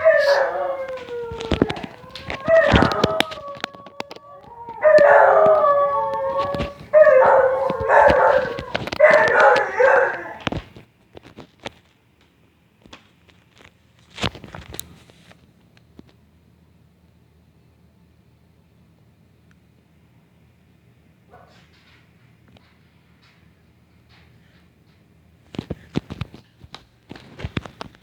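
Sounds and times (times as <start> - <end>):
dog howling: 0.0 - 10.6
faint clicks: 0.0 - 10.8.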